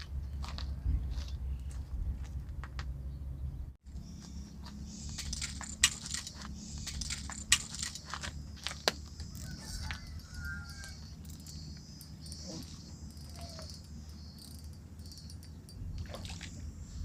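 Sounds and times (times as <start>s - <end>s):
low steady rumble: 0.0s - 17.0s
crickets chirping: 3.9s - 17.0s
sharp clicks: 5.0s - 9.0s
faint bird chirps: 8.9s - 17.0s.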